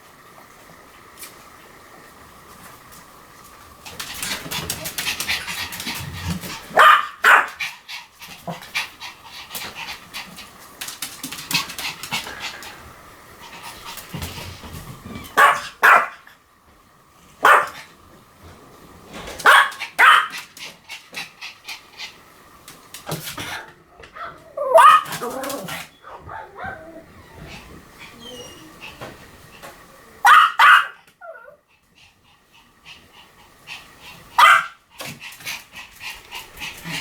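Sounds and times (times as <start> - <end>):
dog panting: 3.8 - 6.8, 7.4 - 15.0, 19.9 - 22.4, 25.7 - 29.8, 31.6 - 37.0
dog barking sharply: 6.8 - 7.6, 15.4 - 16.1, 17.4 - 17.8, 19.4 - 20.4, 30.2 - 31.0, 34.4 - 34.8.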